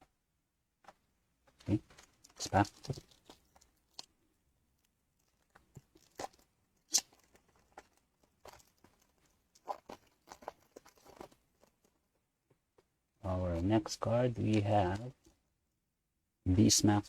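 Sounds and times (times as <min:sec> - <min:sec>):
foil wrapper crinkling and tearing: 0:05.2 - 0:11.9.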